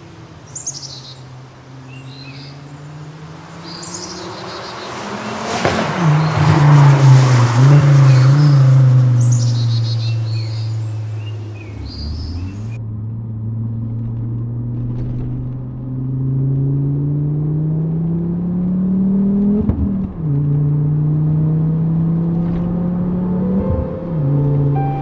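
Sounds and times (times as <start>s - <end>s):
car engine pulling under load: 1.0s - 12.8s, 18.8s - 25.0s.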